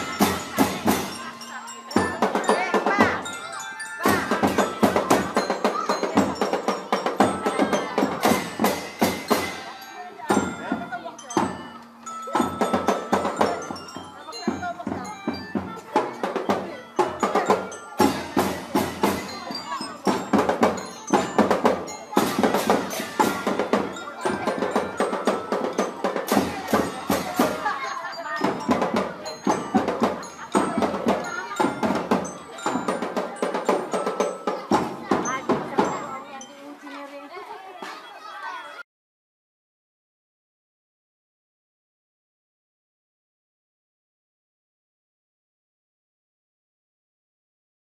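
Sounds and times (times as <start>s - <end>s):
drum strokes: 0.0s - 36.6s
ringing bell-like tones: 0.0s - 37.4s.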